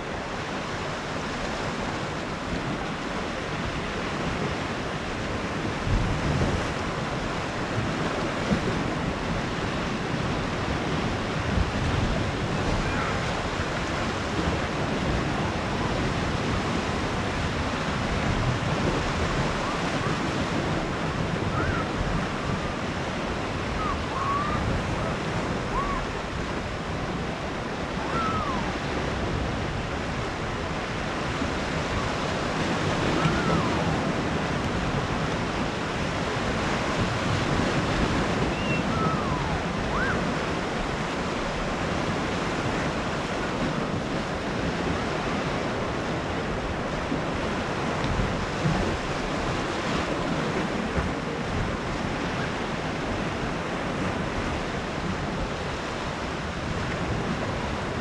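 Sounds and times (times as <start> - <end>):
sea waves washing on beach: 0.0 - 58.0
wind buffeting microphone: 0.0 - 58.0.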